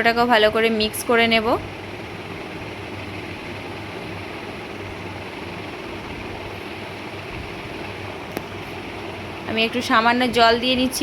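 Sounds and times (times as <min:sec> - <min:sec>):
gas burner hiss and rumble: 0:00.0 - 0:11.0.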